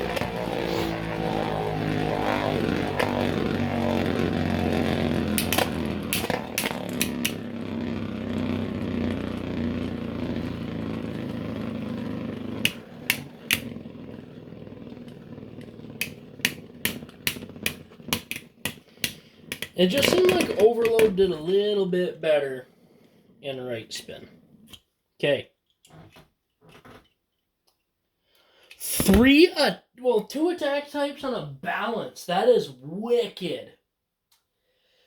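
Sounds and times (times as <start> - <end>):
spinning tops whirring and grinding: 0.0 - 21.6
sharp plastic clicks: 16.0 - 21.2.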